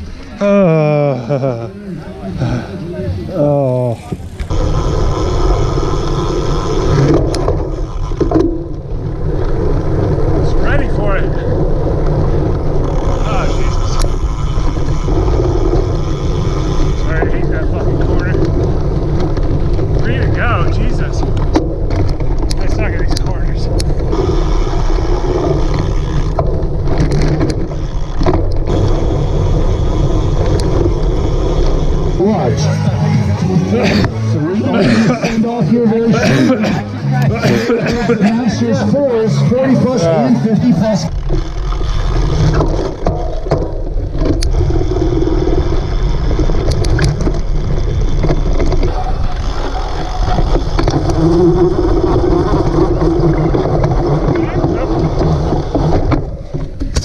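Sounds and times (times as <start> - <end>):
wind rumbling over microphone: 2.1 - 32.4, 39.5 - 57.0
bike knocks and rattles: 11.2 - 31.9, 41.1 - 57.0
sharp clicks: 46.4 - 47.5.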